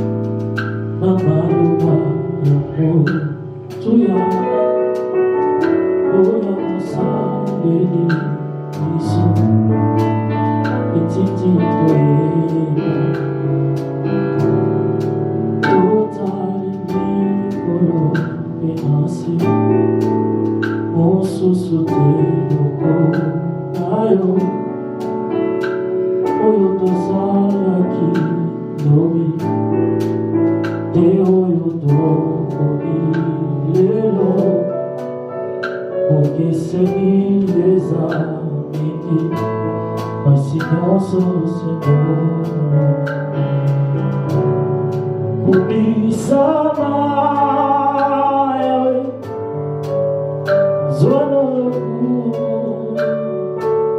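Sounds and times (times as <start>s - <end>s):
sustained keyboard chords: 0.0s - 53.9s
person singing: 1.0s - 5.0s, 5.7s - 13.4s, 15.6s - 20.2s, 20.9s - 24.8s, 26.3s - 30.1s, 30.9s - 35.0s, 36.1s - 43.3s, 45.4s - 49.5s, 50.5s - 53.7s.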